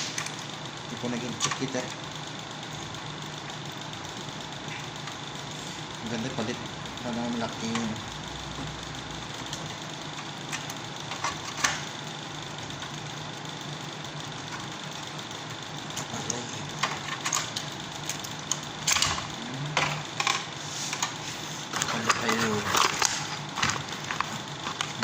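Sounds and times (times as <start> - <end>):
mechanical hum with whine: 0.0 - 25.0
parts clicking and knocking: 9.4 - 11.9, 15.9 - 25.0.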